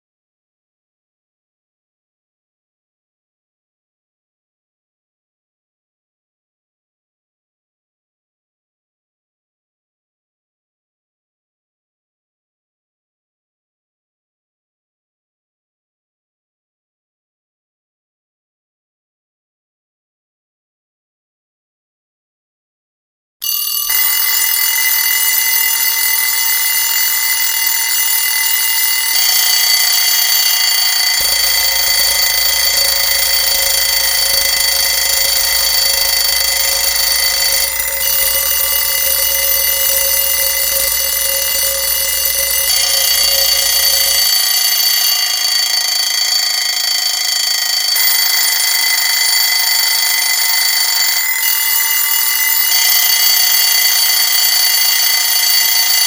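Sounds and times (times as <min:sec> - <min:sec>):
alarm clocks ringing: 0:23.4 - 0:56.0.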